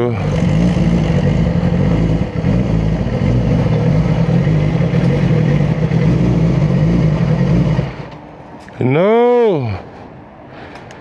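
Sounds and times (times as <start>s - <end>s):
motorcycle engine running: 0.0s - 8.2s.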